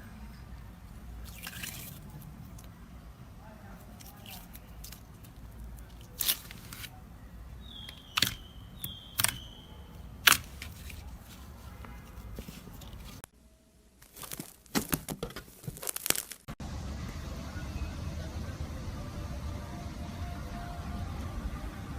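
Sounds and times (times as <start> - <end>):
slime popping and crackling: 3.8 - 6.8, 7.9 - 9.5, 14.0 - 16.5
high squeaks: 7.6 - 13.2.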